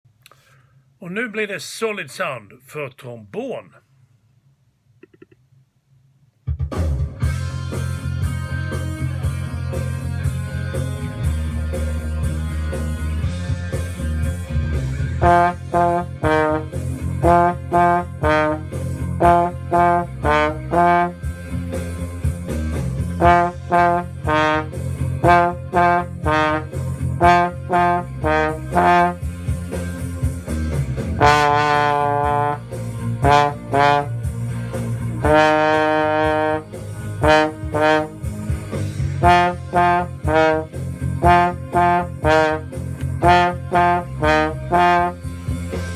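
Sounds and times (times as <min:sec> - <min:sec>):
backing track music: 0:06.5 - 0:45.9
trombone playing: 0:15.2 - 0:21.6, 0:23.1 - 0:29.8, 0:31.1 - 0:45.5.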